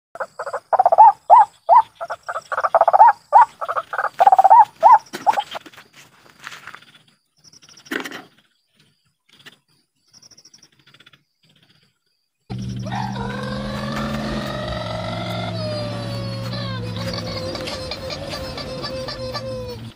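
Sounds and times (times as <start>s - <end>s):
waterhen calling: 0.2s - 5.6s, 12.5s - 19.9s.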